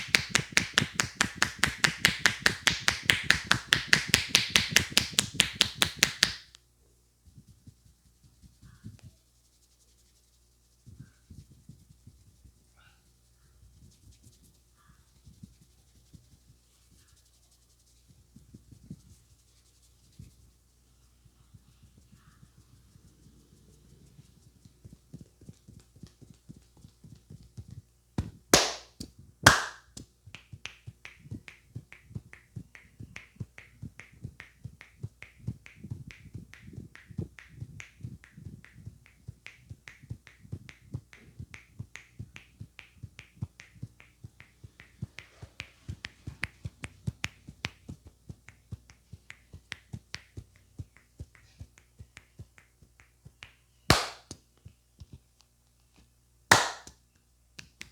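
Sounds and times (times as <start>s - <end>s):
hands tapping on head: 0.0s - 6.6s, 24.9s - 55.2s, 56.5s - 57.0s.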